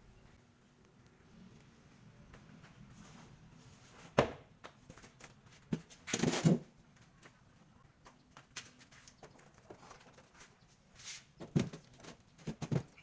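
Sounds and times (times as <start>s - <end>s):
scrape or rustle: 8.8s - 11.4s.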